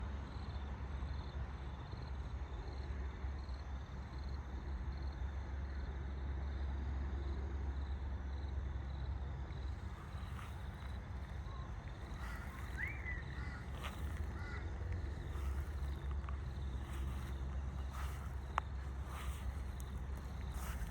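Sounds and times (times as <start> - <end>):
creek water flowing: 10.6 - 20.9
birds calling: 11.3 - 20.9.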